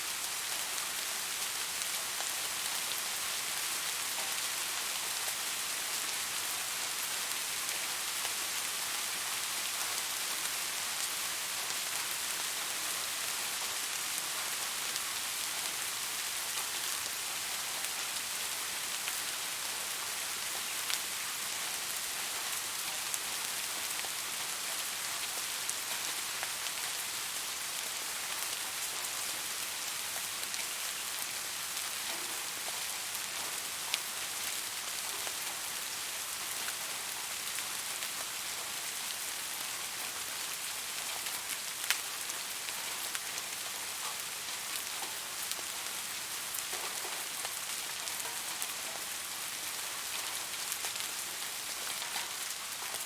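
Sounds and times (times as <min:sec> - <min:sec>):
steady rain hiss: 0:00.0 - 0:53.0.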